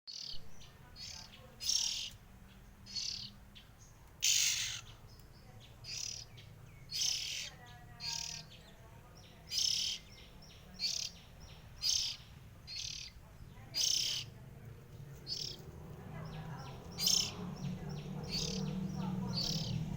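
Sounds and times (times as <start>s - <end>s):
birds chirping roughly: 0.1s - 19.9s.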